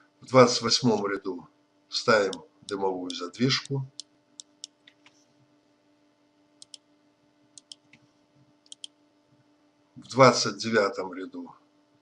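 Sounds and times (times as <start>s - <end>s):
faint steady hum: 0.0s - 12.0s
computer mouse clicking: 3.9s - 5.2s, 6.6s - 6.8s, 7.6s - 9.0s.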